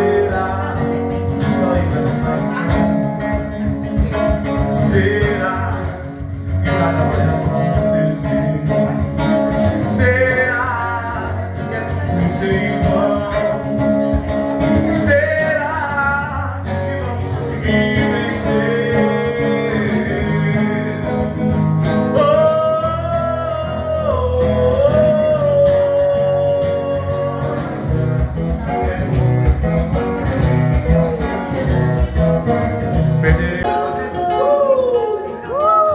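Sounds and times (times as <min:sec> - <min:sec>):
band playing melody: 0:00.0 - 0:35.9
person singing: 0:22.1 - 0:28.0, 0:32.9 - 0:35.9.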